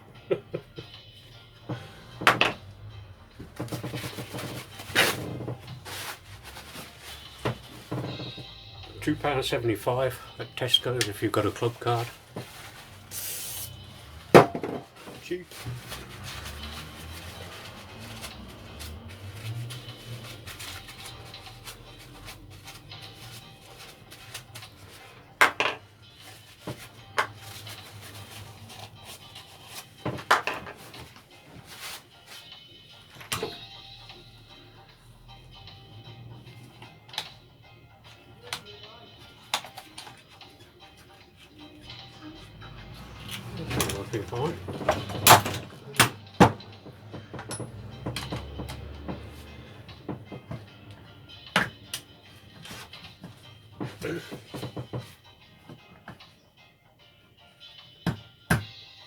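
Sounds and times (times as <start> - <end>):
engine parts clicking and knocking: 1.7 - 12.2, 42.8 - 53.5
tools knocking on workbench: 2.2 - 2.7, 14.3 - 15.2, 25.4 - 25.8, 44.6 - 50.7.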